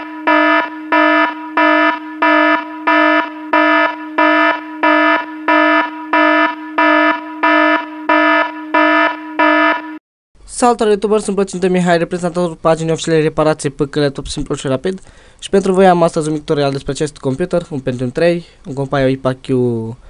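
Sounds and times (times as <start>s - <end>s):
bright pulsing beep: 0.0s - 10.0s
steady electronic tone: 0.0s - 10.0s.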